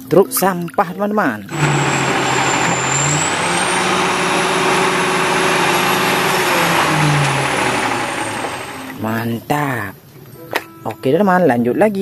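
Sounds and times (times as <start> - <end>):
thin high whine: 1.5 - 9.1
truck engine running: 1.5 - 9.1.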